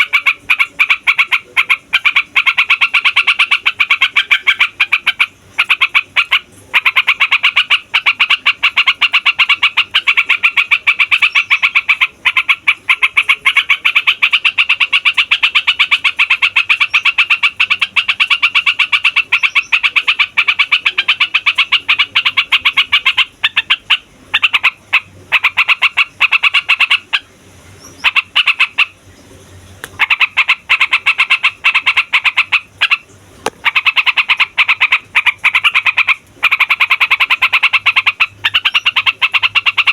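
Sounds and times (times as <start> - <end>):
bird singing fast repeated notes: 0.0 - 39.9.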